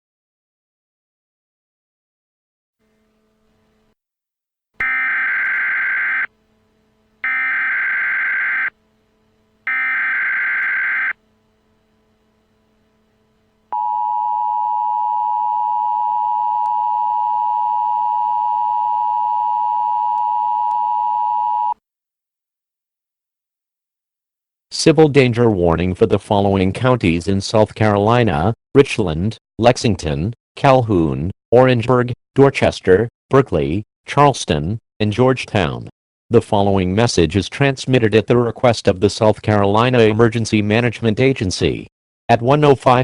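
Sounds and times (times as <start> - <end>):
two-tone attention signal: 4.8 - 6.3, 7.2 - 8.7, 9.7 - 11.1
warbling data tones: 4.8 - 6.3, 7.2 - 8.7, 9.7 - 11.1.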